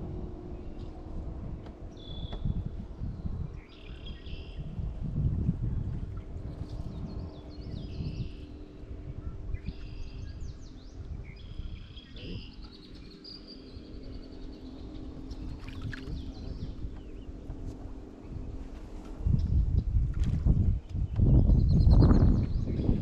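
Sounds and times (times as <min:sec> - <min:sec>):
low rumble: 0:00.0 - 0:23.0
songbirds chirping and trilling: 0:00.2 - 0:05.0, 0:05.6 - 0:23.0.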